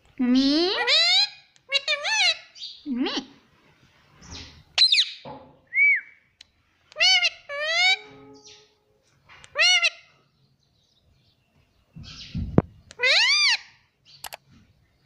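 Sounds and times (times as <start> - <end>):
parrot calling: 0.4 - 3.2, 6.9 - 8.7, 9.4 - 10.1, 12.9 - 13.8.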